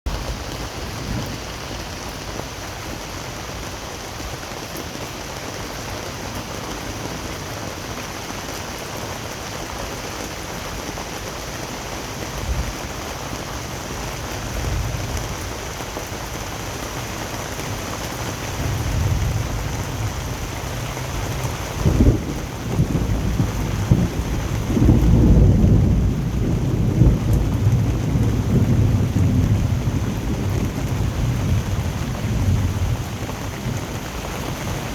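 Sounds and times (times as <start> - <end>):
steady rain: 0.1 - 34.9
thunder rumbling: 17.7 - 34.9
sharp thunder clap: 21.8 - 30.6.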